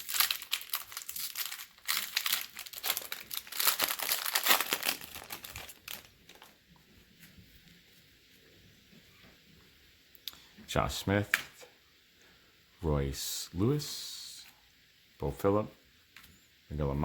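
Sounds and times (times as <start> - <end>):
foil wrapper crinkling and tearing: 0.0 - 6.7.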